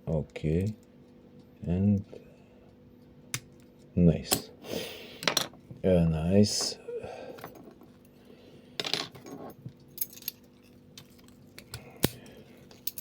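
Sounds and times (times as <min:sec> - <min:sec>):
metallic clinks of lockpicking tools: 0:11.6 - 0:13.0.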